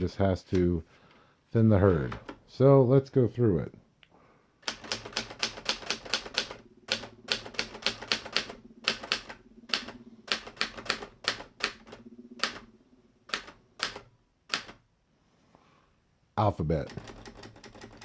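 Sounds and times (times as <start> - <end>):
manual typewriter key strikes: 13.3 - 14.8.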